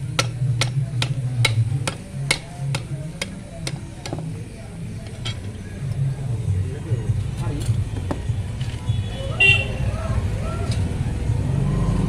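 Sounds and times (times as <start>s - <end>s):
sharp regular taps: 0.0s - 4.4s.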